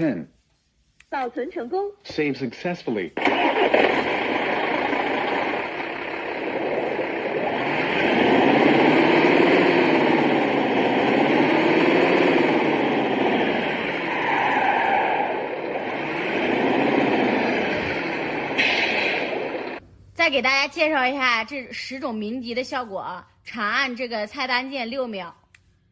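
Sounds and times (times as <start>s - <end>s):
simulated engine revving: 3.2s - 19.8s.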